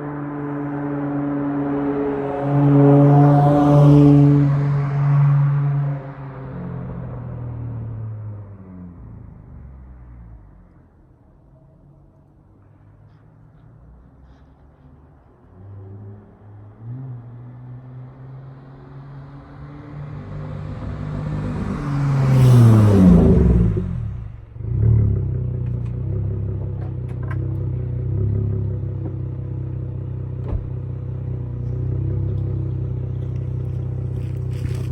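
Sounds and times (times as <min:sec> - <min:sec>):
car engine revving and idling: 0:14.2 - 0:34.9.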